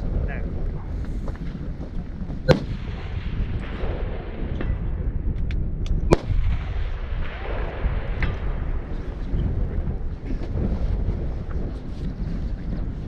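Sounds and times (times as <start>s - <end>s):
wind buffeting microphone: 0.0s - 13.0s
rifle shots: 2.5s - 5.0s, 6.1s - 9.3s.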